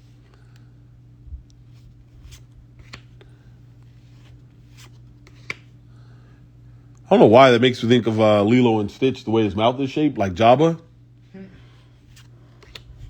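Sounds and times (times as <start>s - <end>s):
steady low hum: 0.0s - 13.0s
trading cards sliding together: 1.7s - 3.2s, 3.8s - 5.7s, 12.0s - 13.0s.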